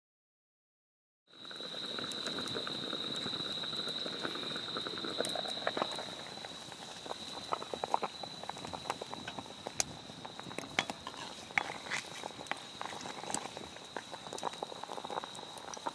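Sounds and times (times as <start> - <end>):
campfire crackling and popping: 1.4 - 15.9.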